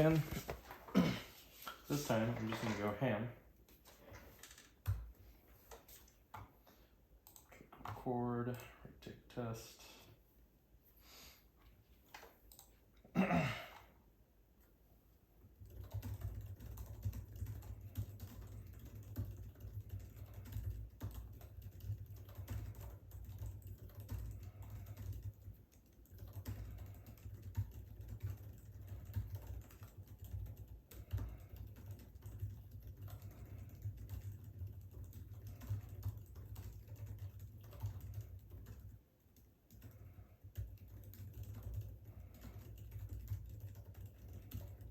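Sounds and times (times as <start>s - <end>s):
fast typing on laptop keyboard: 0.0s - 3.2s, 3.8s - 6.5s, 15.5s - 44.9s.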